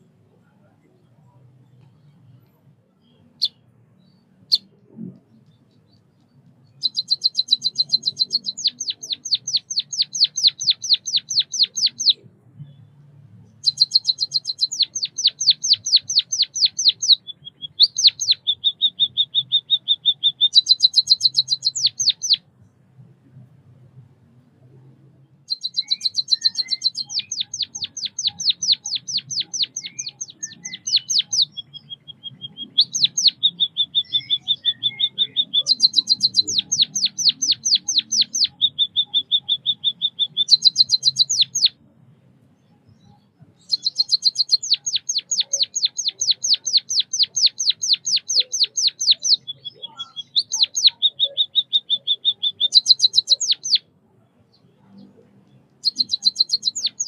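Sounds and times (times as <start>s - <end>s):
bird singing rapid high chirps: 3.0s - 22.5s, 25.4s - 41.9s, 42.5s - 57.0s
buzzy bird trill: 6.6s - 12.2s, 13.6s - 22.4s, 25.5s - 41.8s, 43.1s - 53.9s, 55.8s - 57.0s.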